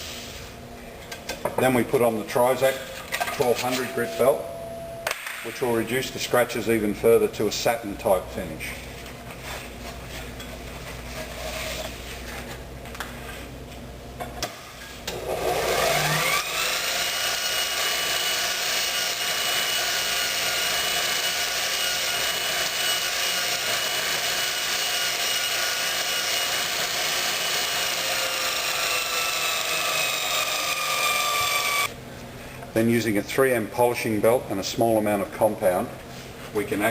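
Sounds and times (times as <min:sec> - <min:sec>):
belt grinder whining: 0:15.1 - 0:31.9.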